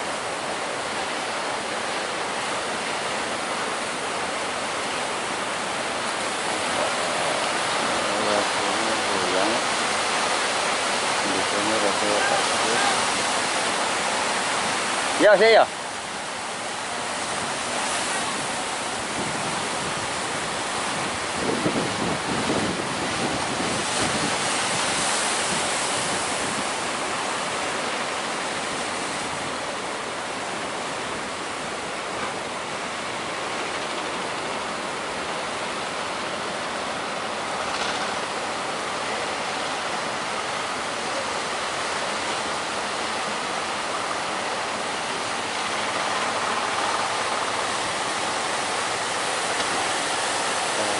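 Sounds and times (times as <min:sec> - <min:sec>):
waves breaking on shore: 0:00.0 - 0:50.9
wind buffeting microphone: 0:16.4 - 0:27.8.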